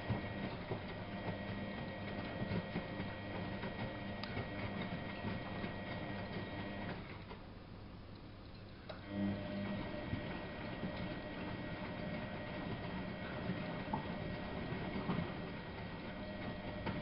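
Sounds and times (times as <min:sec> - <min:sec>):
washing machine motor hum: 0:00.0 - 0:07.8, 0:08.8 - 0:17.0.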